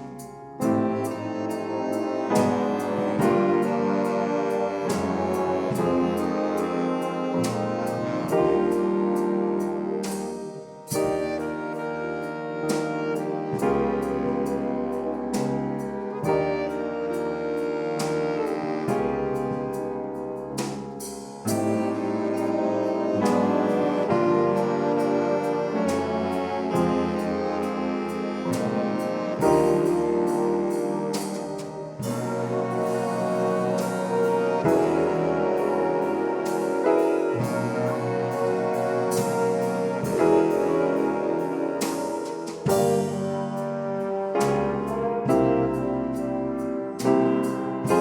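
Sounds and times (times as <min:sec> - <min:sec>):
swing band playing: 0:00.0 - 0:48.0.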